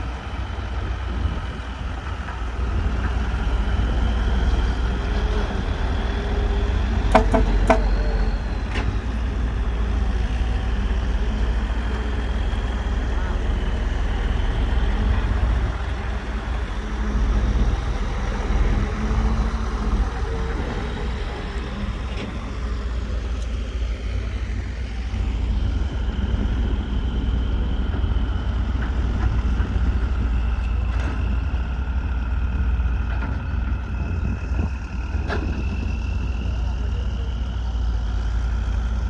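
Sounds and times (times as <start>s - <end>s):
diesel machinery rumbling: 0.0s - 39.0s.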